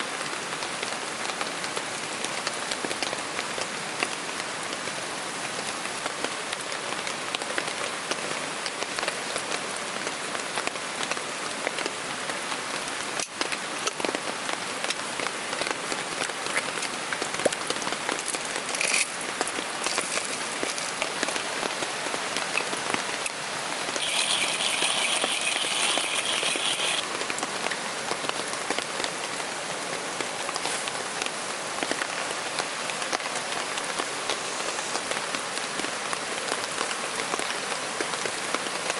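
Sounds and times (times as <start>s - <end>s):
heavy rain downpour: 0.0s - 38.9s
higher louder hiss: 23.9s - 27.0s.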